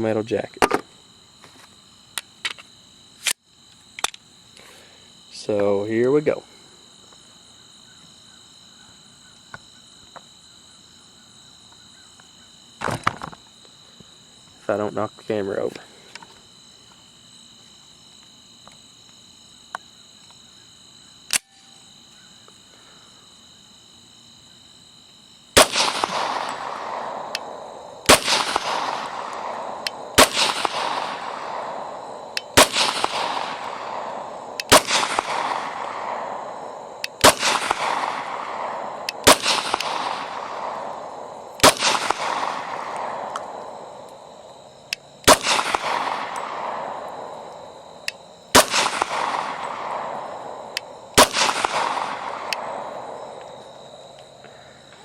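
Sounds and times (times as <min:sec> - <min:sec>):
crickets chirping: 0:00.0 - 0:55.0
sharp click: 0:21.3 - 0:21.7
pistol shots with echo: 0:25.6 - 0:44.4, 0:45.2 - 0:47.8, 0:48.5 - 0:53.4.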